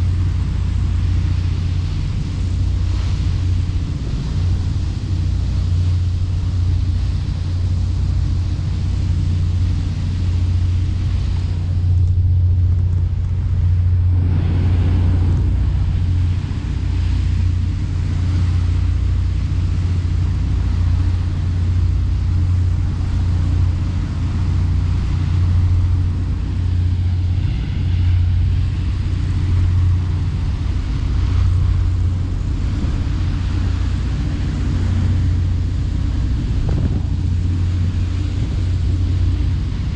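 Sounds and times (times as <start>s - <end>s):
boat engine droning: 0.0s - 39.9s
rushing noise: 11.0s - 18.9s.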